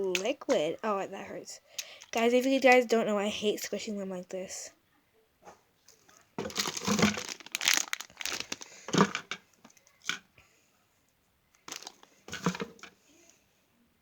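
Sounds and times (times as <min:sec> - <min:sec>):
crinkling toys being squeezed: 0:01.8 - 0:02.8, 0:05.9 - 0:10.2, 0:11.6 - 0:12.9.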